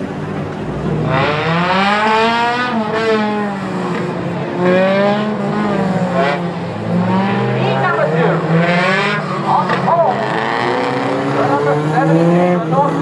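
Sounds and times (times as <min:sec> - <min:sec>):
race car engines revving: 0:00.0 - 0:13.0.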